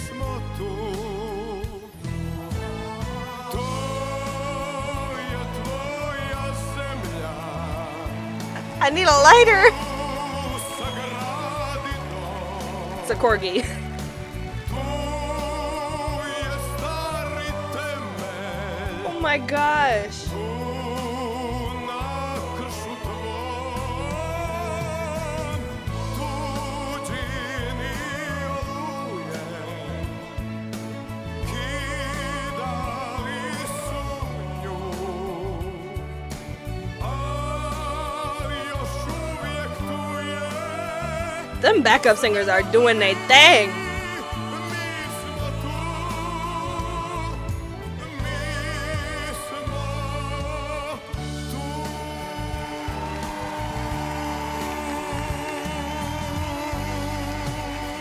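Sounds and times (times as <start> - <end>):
band accompaniment: 0.0 - 58.0
backing vocals: 8.5 - 13.9, 18.8 - 20.3, 41.6 - 45.8
voices singing together: 37.8 - 58.0
person singing with vibrato: 41.6 - 45.7.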